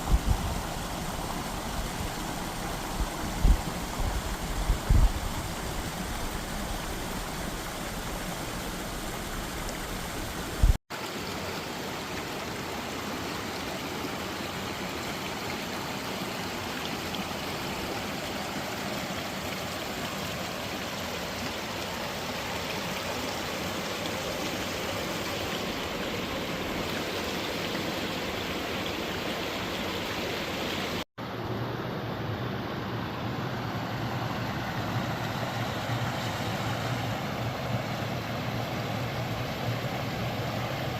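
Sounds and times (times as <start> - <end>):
stream water rushing: 0.0 - 40.9.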